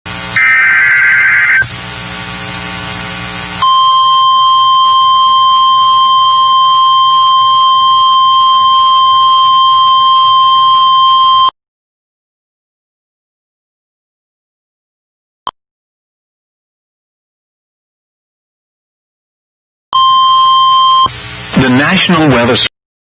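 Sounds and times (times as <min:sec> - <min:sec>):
radio hiss: 0:00.3 - 0:02.2, 0:21.4 - 0:22.7
data burst: 0:00.4 - 0:01.7
high alarm tone: 0:00.4 - 0:01.7, 0:03.6 - 0:11.4.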